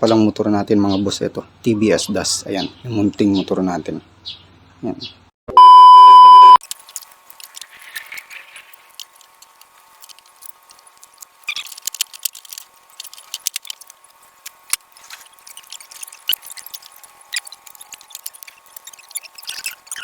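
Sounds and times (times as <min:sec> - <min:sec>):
electronic beep: 0:05.5 - 0:06.6
hand tools clicking and rattling: 0:06.6 - 0:20.0.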